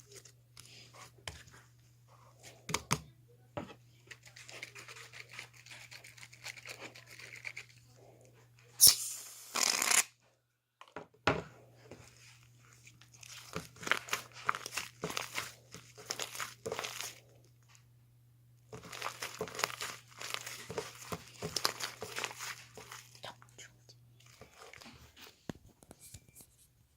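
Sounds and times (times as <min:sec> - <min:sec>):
low electrical hum: 0:00.0 - 0:26.9
material tearing: 0:08.8 - 0:10.1
material crinkling and rustling: 0:12.0 - 0:17.8, 0:18.7 - 0:23.5, 0:24.1 - 0:26.5.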